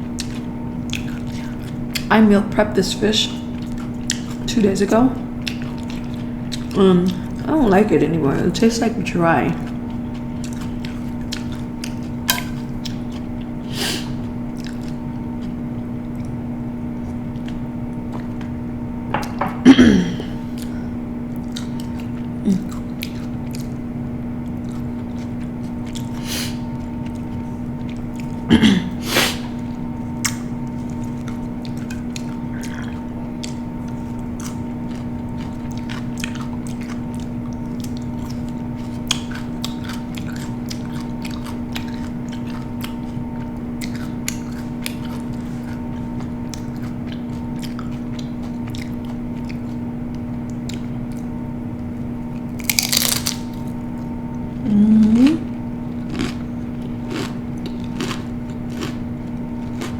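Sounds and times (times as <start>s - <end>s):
person chewing and eating: 0.0s - 59.9s
steady low hum: 0.0s - 59.9s
throat sound: 19.5s - 20.4s, 28.5s - 29.0s, 54.6s - 55.5s.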